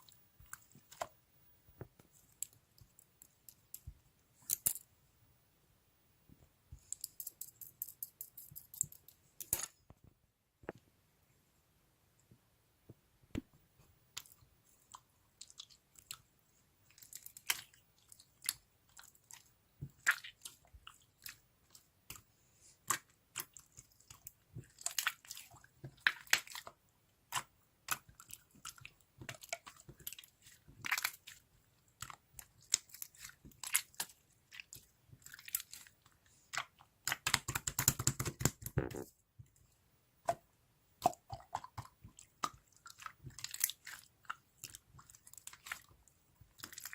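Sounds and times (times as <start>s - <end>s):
slime squelching and popping: 16.9s - 39.1s, 40.2s - 46.9s.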